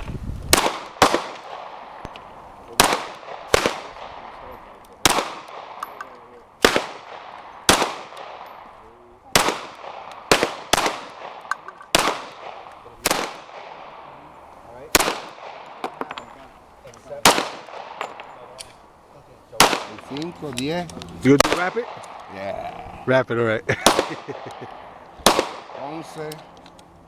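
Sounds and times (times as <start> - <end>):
gunshots with echo: 0.5 - 2.1, 2.7 - 14.3, 14.9 - 16.2, 17.2 - 18.5, 19.6 - 20.3, 21.4 - 22.3, 23.8 - 26.4.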